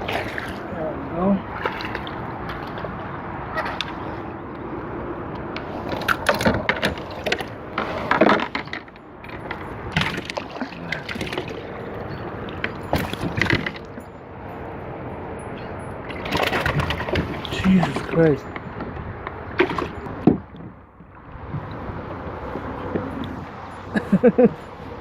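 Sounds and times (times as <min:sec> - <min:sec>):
water splashing: 0:00.0 - 0:04.2, 0:09.8 - 0:14.0, 0:16.0 - 0:18.4, 0:19.5 - 0:20.2
knocks and clatters in a kayak: 0:05.5 - 0:14.1, 0:16.0 - 0:23.9.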